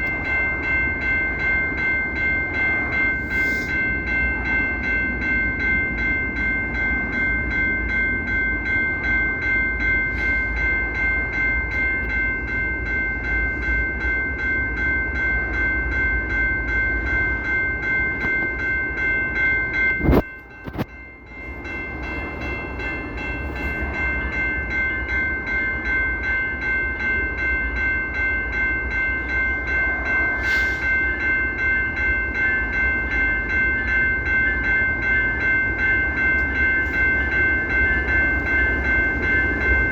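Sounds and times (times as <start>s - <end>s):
locomotive air horn chord: 29.9s - 31.1s.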